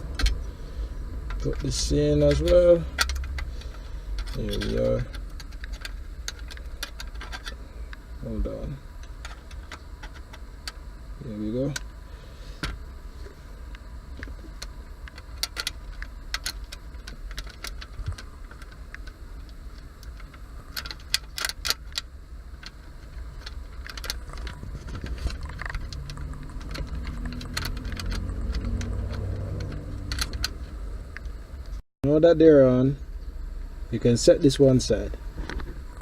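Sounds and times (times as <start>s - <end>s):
steady low rumble: 0.0s - 36.0s
metallic clicks and clinks: 25.2s - 30.6s.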